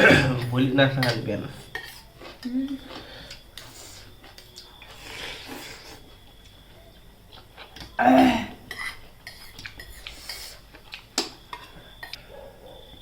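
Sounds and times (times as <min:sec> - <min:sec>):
cutlery clinking against bowls: 0:00.2 - 0:02.4, 0:08.7 - 0:10.5.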